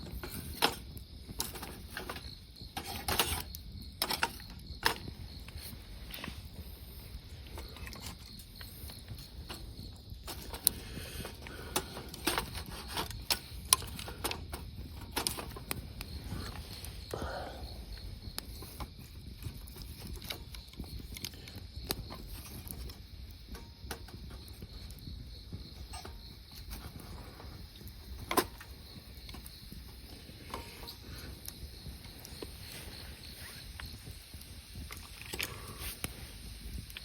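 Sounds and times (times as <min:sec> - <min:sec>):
campfire crackling and popping: 0:00.0 - 0:37.0.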